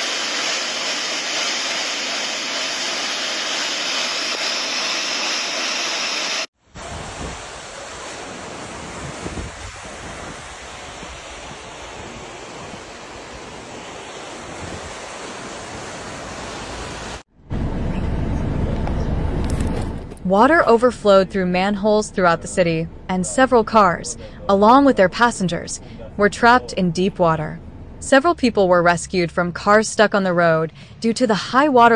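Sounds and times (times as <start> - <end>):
heavy rain hissing: 0.0 - 17.2
rushing water: 0.0 - 17.2
wind buffeting microphone: 6.8 - 16.2.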